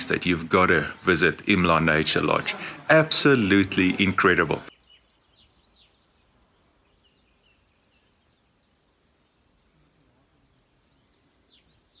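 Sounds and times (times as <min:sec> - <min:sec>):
falling bird chirps: 0:03.8 - 0:12.0
high-pitched insect chorus: 0:03.8 - 0:12.0.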